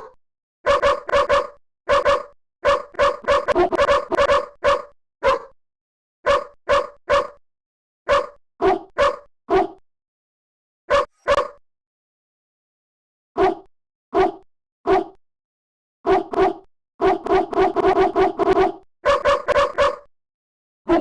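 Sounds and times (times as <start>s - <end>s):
dog barking: 0.0s - 5.6s, 6.2s - 7.4s, 8.1s - 9.8s, 10.9s - 11.6s, 13.4s - 15.2s, 16.1s - 20.1s.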